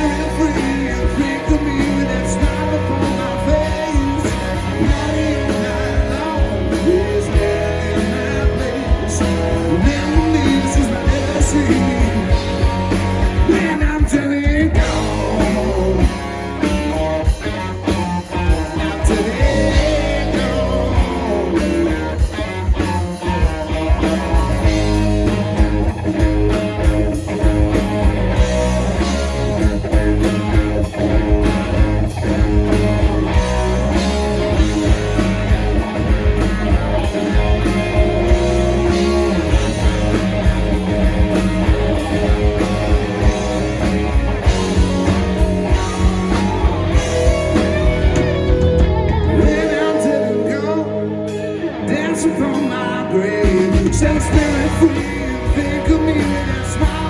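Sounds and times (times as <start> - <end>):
bass guitar: 0.0 - 57.0
drums: 0.0 - 57.0
electric guitar: 0.0 - 57.0.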